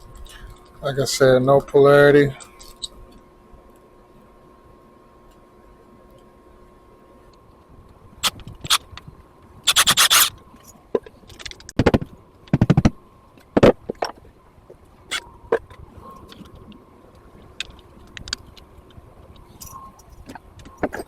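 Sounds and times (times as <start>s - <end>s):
rapid ratcheting clicks: 9.7s - 10.3s
clicks and scrapes while wiring: 9.7s - 10.4s.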